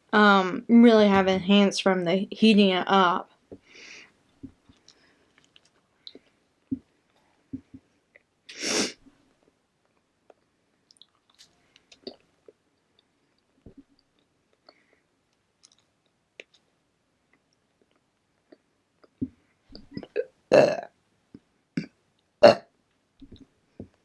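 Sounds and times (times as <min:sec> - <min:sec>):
person chewing: 0:09.8 - 0:12.6, 0:15.6 - 0:16.6.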